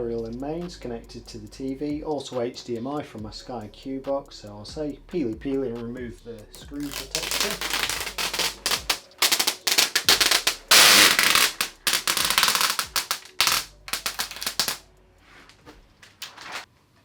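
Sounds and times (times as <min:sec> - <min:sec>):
plastic film peeling off: 0:06.7 - 0:14.8, 0:16.1 - 0:16.7.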